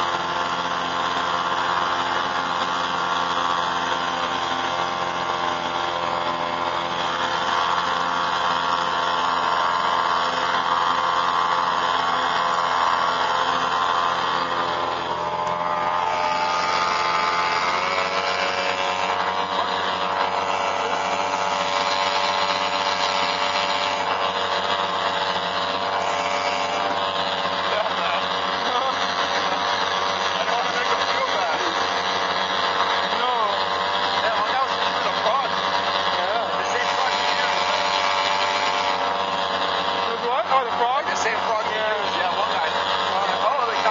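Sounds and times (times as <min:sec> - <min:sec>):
outboard motors droning: 0:00.0 - 0:43.9.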